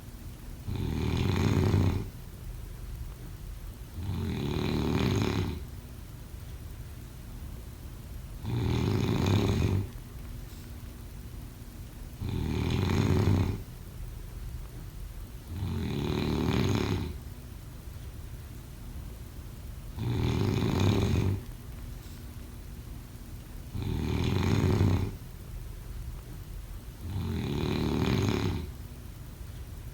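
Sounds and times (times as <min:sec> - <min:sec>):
person snoring: 0:00.7 - 0:02.1, 0:04.0 - 0:05.6, 0:08.4 - 0:09.9, 0:12.2 - 0:13.6, 0:15.5 - 0:17.2, 0:20.0 - 0:21.4, 0:23.7 - 0:25.2, 0:27.0 - 0:28.7.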